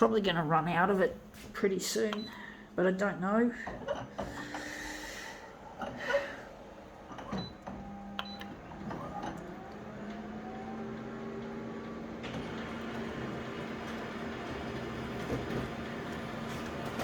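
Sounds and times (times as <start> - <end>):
photocopier motor hum: 4.2 - 17.0.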